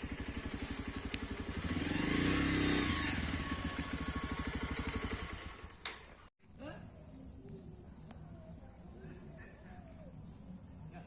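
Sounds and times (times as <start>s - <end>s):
motorcycle passing by: 0.0s - 5.7s.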